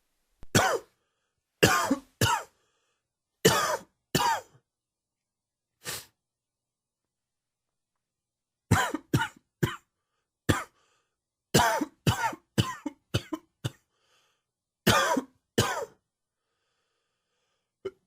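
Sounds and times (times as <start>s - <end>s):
man coughing: 0.5s - 0.9s, 1.6s - 2.5s, 3.5s - 4.6s, 8.7s - 9.8s, 11.5s - 13.8s, 14.9s - 16.0s.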